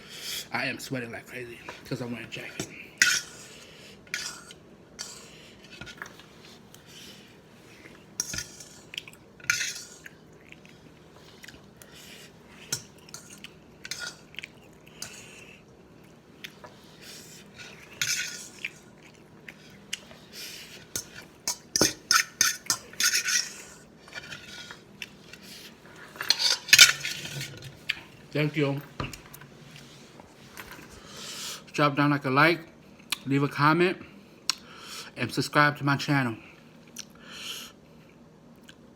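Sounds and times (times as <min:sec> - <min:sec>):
utensils clinking on a dish: 0:26.1 - 0:27.7.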